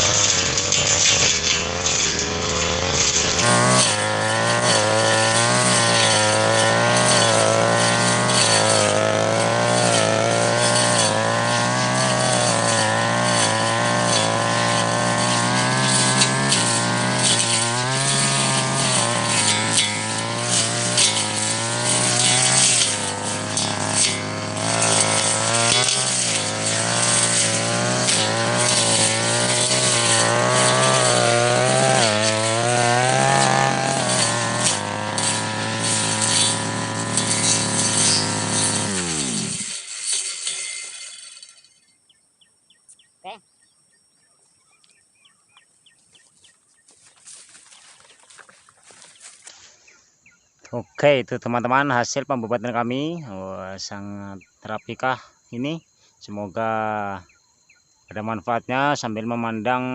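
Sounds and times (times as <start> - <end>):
brush cutter engine cutting weeds: 0.0 - 41.8, 46.1 - 49.9.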